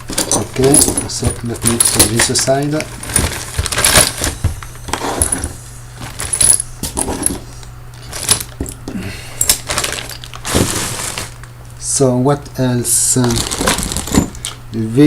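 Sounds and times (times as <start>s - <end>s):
metal connectors clinking: 0.0s - 4.4s, 5.2s - 10.5s.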